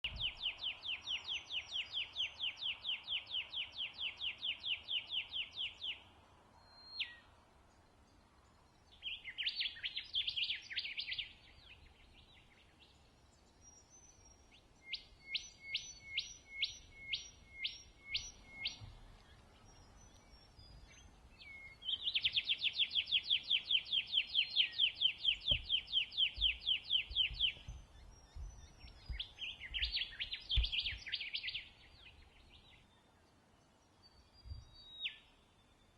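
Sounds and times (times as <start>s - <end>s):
bird whistling repeated notes: 14.8s - 18.8s, 21.4s - 31.7s.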